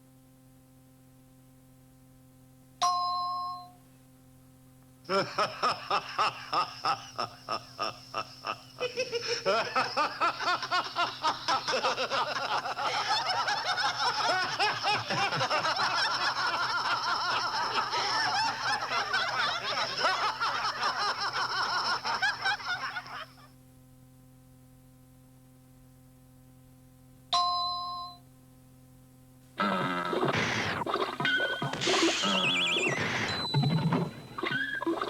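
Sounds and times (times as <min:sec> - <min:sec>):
crowd giggling: 0:05.1 - 0:23.4, 0:29.6 - 0:35.0
rhythmic laughs: 0:05.1 - 0:23.5, 0:29.6 - 0:35.0.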